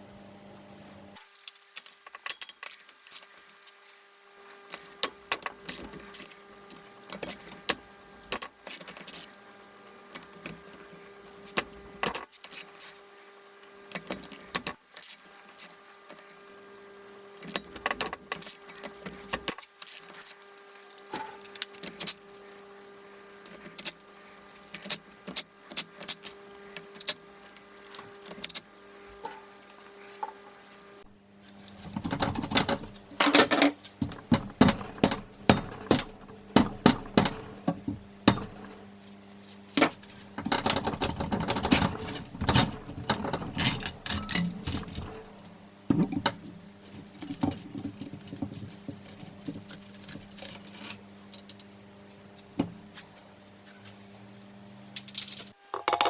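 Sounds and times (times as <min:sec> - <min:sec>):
faint steady hum: 0:00.0 - 0:56.0
metal tools clinking: 0:40.4 - 0:45.6, 0:46.9 - 0:51.7, 0:55.0 - 0:55.6.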